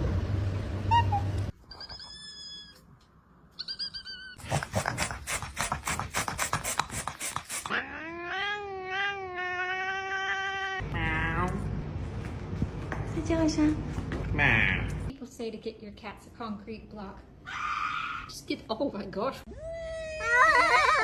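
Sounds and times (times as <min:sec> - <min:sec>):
cat meowing and yowling: 0:07.7 - 0:10.8.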